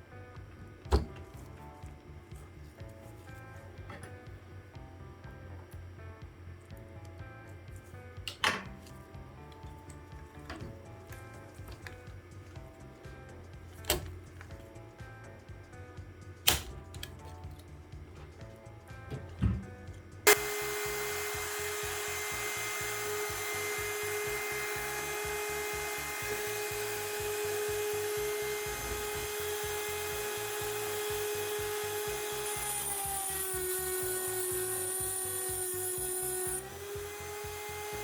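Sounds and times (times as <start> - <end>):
small electric power tool running: 20.1 - 38.0
tool hissing into material: 20.2 - 38.0.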